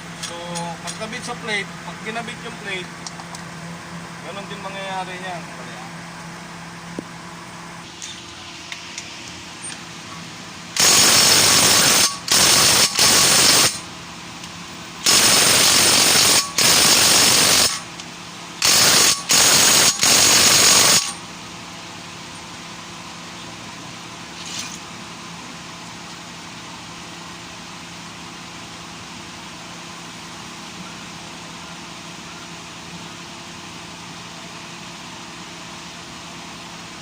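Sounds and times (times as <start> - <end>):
pneumatic air tool bursts: 10.7 - 13.9, 15.0 - 17.9, 18.6 - 21.2.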